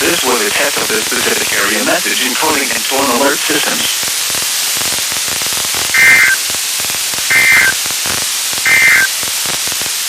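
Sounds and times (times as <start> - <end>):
radio static: 0.0 - 4.1, 4.9 - 9.9
warbling digital data tones: 5.9 - 6.4, 7.3 - 7.8, 8.6 - 9.2.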